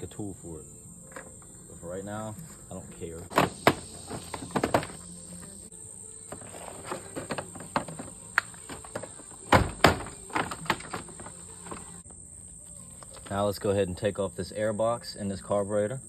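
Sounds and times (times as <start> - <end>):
crickets chirring: 0.0 - 16.0
plastic clicks and knocks: 6.3 - 11.8.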